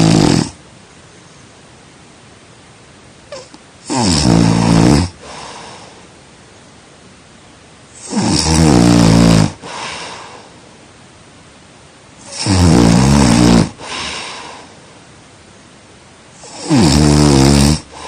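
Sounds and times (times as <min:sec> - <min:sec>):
person snoring: 0:00.0 - 0:00.6, 0:03.3 - 0:06.0, 0:08.0 - 0:10.4, 0:12.2 - 0:14.7, 0:16.4 - 0:18.0
soft breath: 0:05.2 - 0:06.2, 0:09.5 - 0:10.8, 0:13.7 - 0:15.0.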